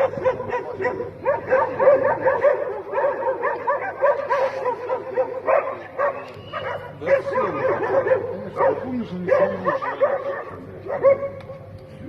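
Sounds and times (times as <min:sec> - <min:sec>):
dogs barking and yelping: 0:00.0 - 0:11.7.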